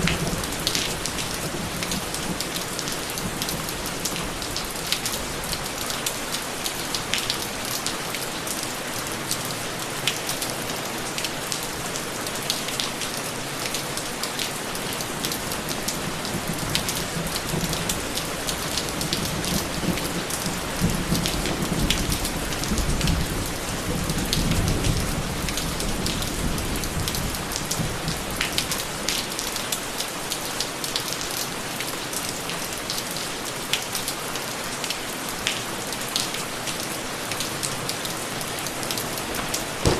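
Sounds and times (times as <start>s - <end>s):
steady rain: 0.0s - 39.9s
raindrop hits: 39.3s - 39.9s
thunder rumble: 39.7s - 39.9s.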